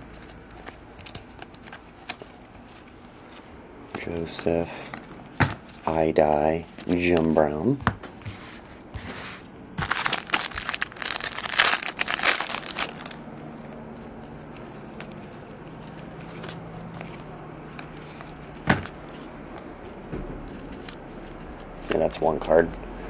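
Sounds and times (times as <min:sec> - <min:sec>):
card pack wrapper tearing: 0:09.8 - 0:15.1.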